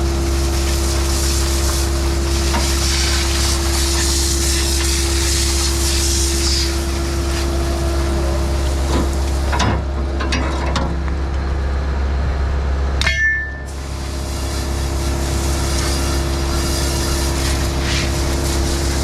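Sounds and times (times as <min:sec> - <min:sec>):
skid steer engine running: 0:00.0 - 0:19.0
hissing scraping noise: 0:02.5 - 0:09.4.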